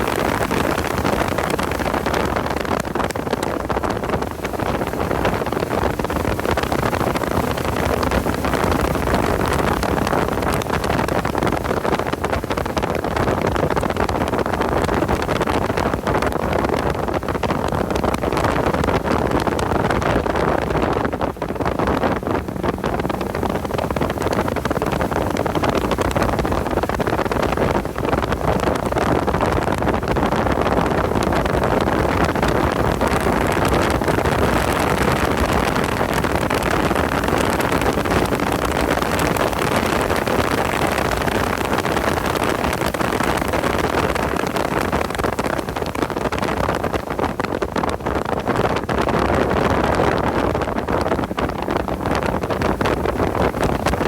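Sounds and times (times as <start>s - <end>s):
car engine at speed: 0.0s - 54.0s
wind noise over microphone: 0.0s - 54.0s.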